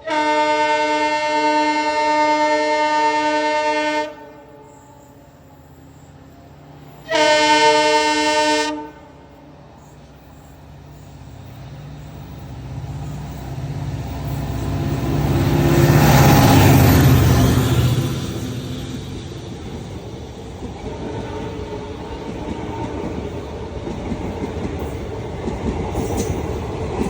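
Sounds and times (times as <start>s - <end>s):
locomotive air horn blasts: 0.0s - 5.1s, 7.0s - 9.2s
train rumbling: 0.0s - 27.0s.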